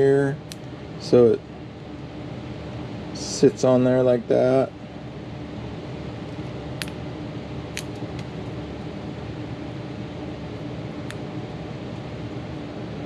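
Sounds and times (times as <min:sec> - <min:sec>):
fan humming: 0:00.0 - 0:13.0.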